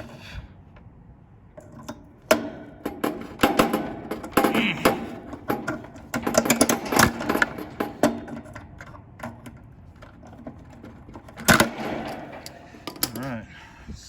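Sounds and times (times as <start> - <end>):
metallic clicks and rattles of wires: 1.5 - 13.4.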